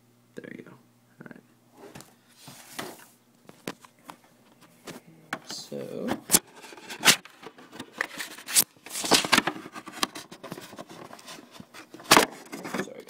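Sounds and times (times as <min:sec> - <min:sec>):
packaging rustling and tearing: 0:06.3 - 0:12.9.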